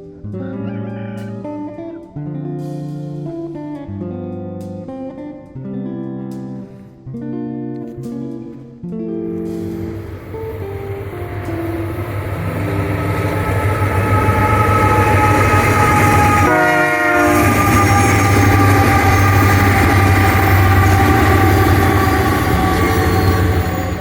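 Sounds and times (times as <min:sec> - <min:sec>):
train rumble: 0:09.4 - 0:24.0
train horn: 0:09.5 - 0:24.0.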